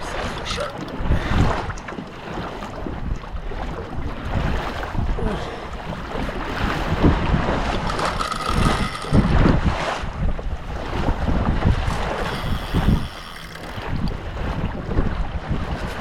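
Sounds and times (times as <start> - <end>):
water sloshing around kayak: 0.0 - 16.0
wind buffeting microphone: 0.0 - 16.0.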